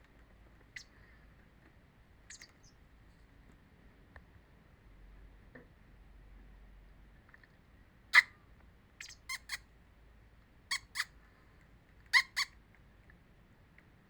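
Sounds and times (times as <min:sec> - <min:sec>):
small bird short sharp calls: 0:02.3 - 0:02.8, 0:09.0 - 0:09.6.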